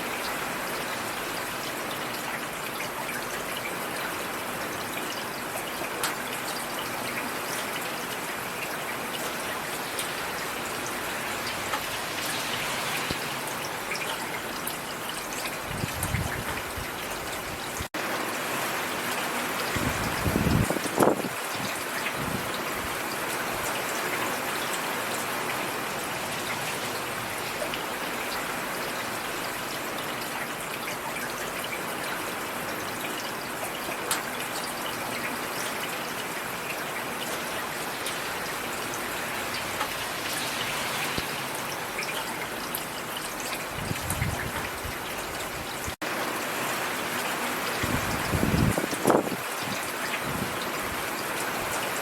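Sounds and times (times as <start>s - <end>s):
steady rain falling: 0.0s - 52.0s.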